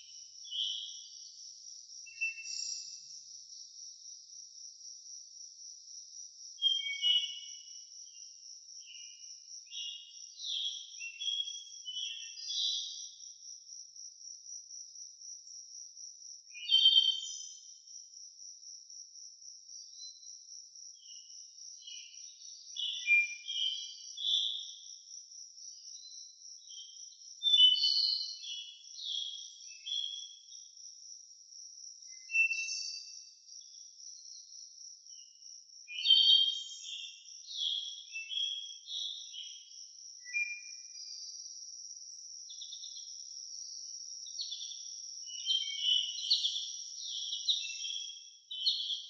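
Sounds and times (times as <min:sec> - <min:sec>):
insect high-pitched trill: 0:00.0 - 0:49.0
songbirds singing: 0:00.0 - 0:49.0.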